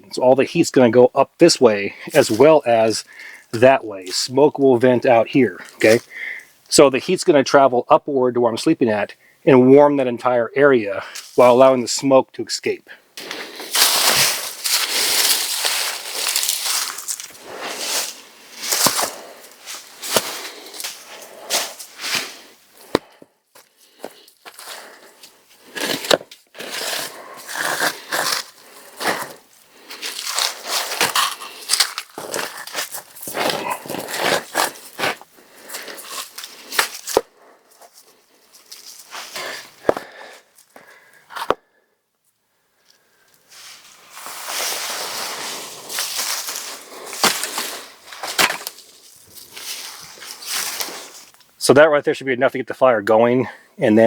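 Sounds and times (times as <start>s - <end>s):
twigs snapping: 13.2s - 17.4s, 30.0s - 35.2s, 45.9s - 49.7s
dry leaves crunching: 13.2s - 23.1s, 23.9s - 37.2s, 43.8s - 51.3s
stick cracking: 25.7s - 29.4s, 30.0s - 37.3s, 46.0s - 48.8s.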